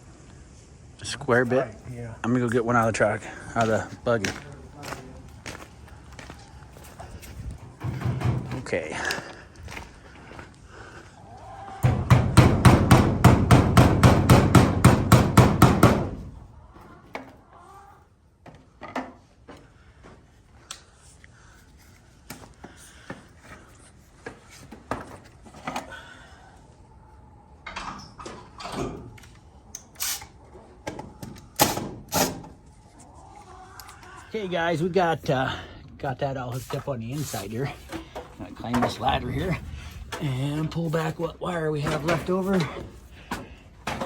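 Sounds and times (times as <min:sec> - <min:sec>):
tools knocking and clattering: 0:07.7 - 0:08.6, 0:41.7 - 0:44.0.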